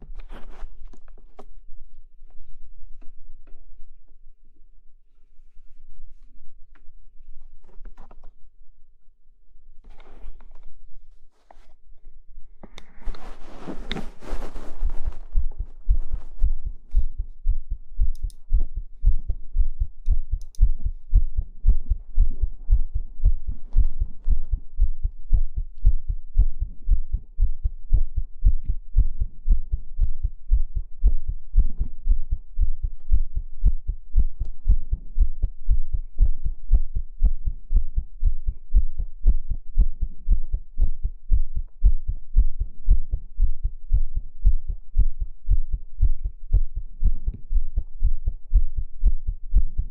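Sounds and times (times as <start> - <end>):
heartbeat thumps: 12.9 - 49.9.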